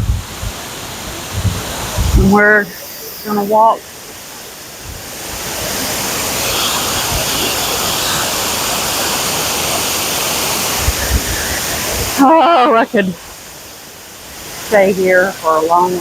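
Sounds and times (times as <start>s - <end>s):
short low thumps: 0.0s - 0.6s, 1.3s - 2.3s
water rushing over spillway: 0.0s - 16.0s.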